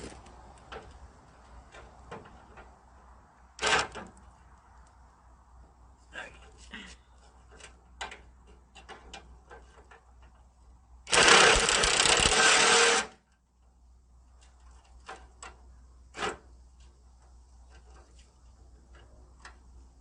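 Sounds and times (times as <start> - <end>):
handheld power tool running: 11.1 - 13.1.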